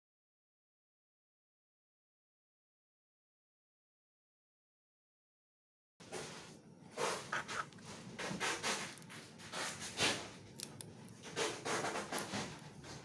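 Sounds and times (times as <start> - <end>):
scraping laptop parts by hand: 7.0 - 13.0.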